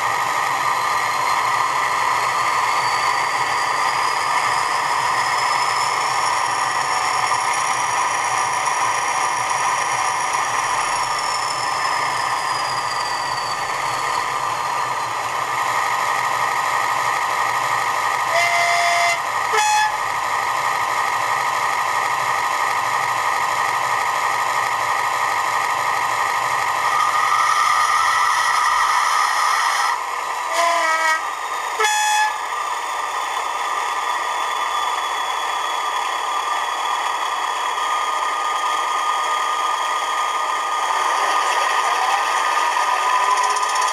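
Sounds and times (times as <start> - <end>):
locomotive horn blast: 18.3 - 20.0, 30.5 - 31.2, 31.8 - 32.4
turbocharger whistle: 18.3 - 20.0.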